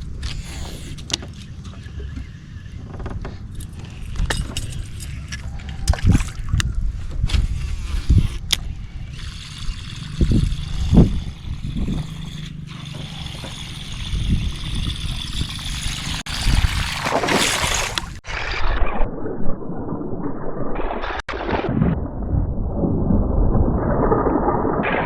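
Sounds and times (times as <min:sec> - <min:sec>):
water sloshing: 0:11.9 - 0:18.3
low rumble: 0:18.5 - 0:25.0.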